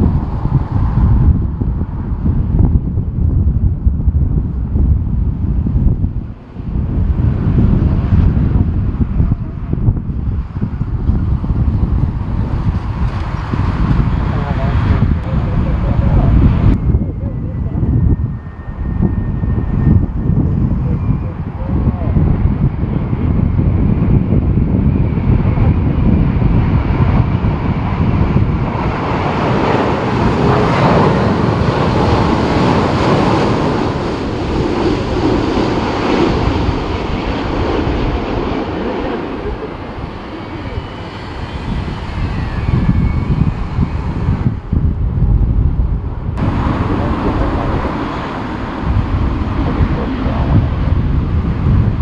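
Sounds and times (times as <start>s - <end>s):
jet airliner flying past: 0.0s - 52.0s
wind rumble on microphone: 0.0s - 52.0s.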